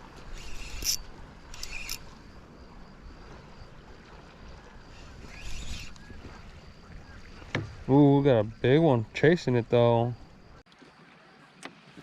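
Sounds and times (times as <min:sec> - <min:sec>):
wind rumbling on microphone: 0:00.0 - 0:08.9.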